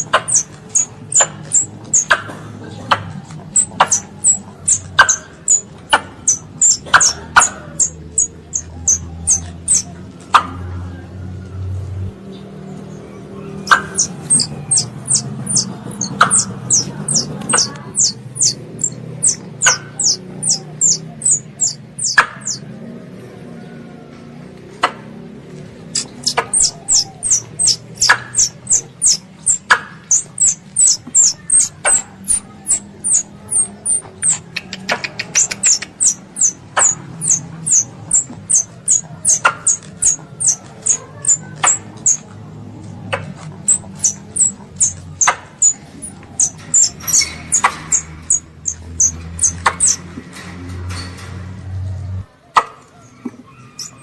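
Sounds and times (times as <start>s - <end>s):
young squirrel chirping: 0.0s - 10.6s, 13.5s - 22.6s, 25.8s - 50.1s, 53.6s - 54.0s
sharp clicks: 25.6s - 51.5s.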